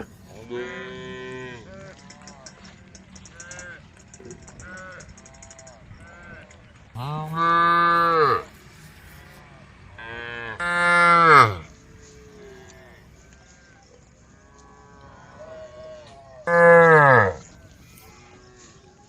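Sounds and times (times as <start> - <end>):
faint moos from other cattle: 0.0 - 19.0
cow mooing loudly: 7.0 - 9.4, 10.0 - 12.9, 16.4 - 17.5.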